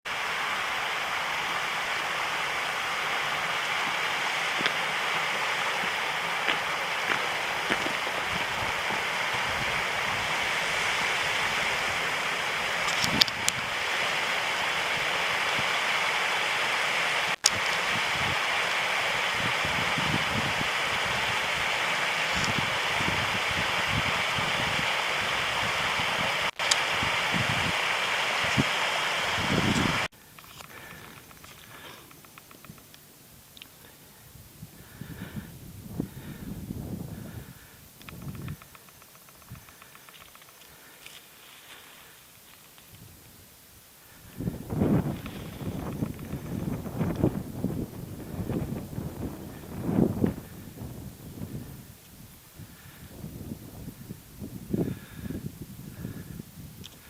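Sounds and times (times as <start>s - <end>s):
low water rumbles: 0.1s - 30.1s, 44.0s - 57.0s
river rushing: 0.1s - 30.1s
sharp tick: 38.0s - 40.7s.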